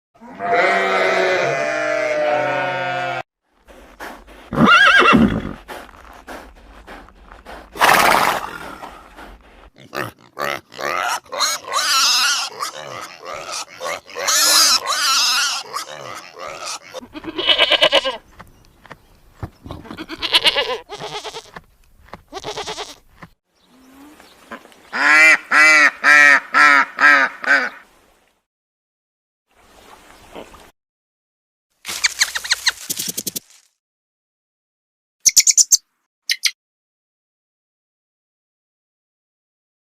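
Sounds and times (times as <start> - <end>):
long steady animal call: 0.2 - 9.7, 10.4 - 18.2
horse whinnying: 4.5 - 5.6, 7.8 - 8.9, 19.7 - 21.5
duck quacking: 24.9 - 27.8.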